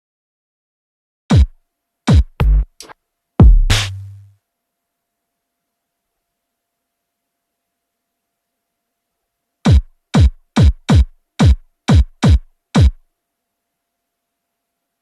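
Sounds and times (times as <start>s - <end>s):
low drum hits dropping in pitch: 3.4s - 4.0s.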